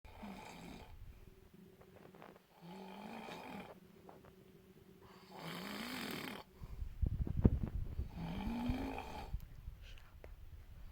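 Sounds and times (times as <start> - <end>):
person snoring: 0.1 - 1.0, 2.5 - 3.8, 5.2 - 6.5, 8.1 - 9.3.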